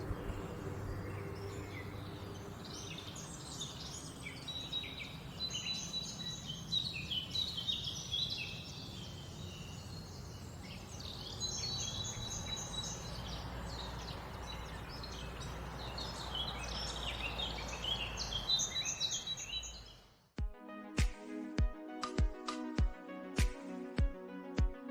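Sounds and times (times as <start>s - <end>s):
low background rumble: 0.0s - 3.5s
birds chirping and singing: 0.0s - 20.1s.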